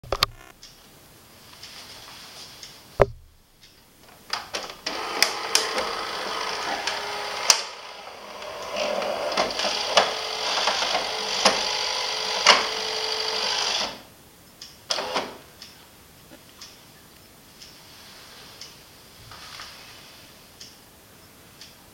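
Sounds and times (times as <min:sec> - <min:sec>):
espresso machine running: 0:04.9 - 0:13.8.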